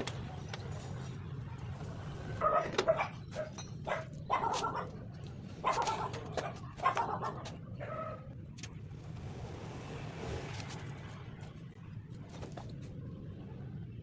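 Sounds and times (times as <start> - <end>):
low background hum: 0.0 - 14.0
dog barking: 2.4 - 5.0, 5.6 - 8.3.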